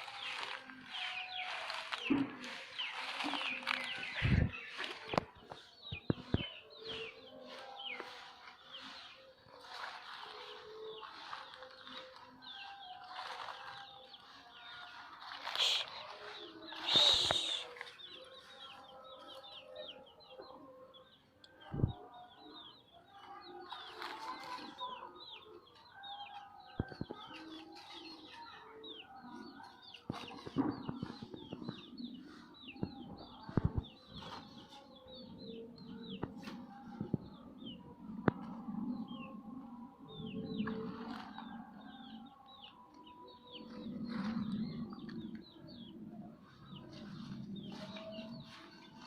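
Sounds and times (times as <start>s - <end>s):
chicks peeping: 0.0s - 49.0s
hens clucking: 15.2s - 17.9s.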